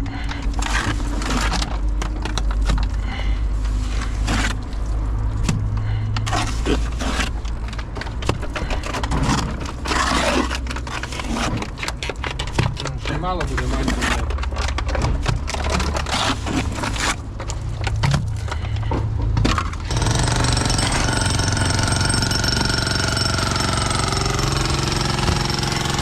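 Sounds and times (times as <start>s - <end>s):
construction scraping and knocking: 5.5s - 26.0s.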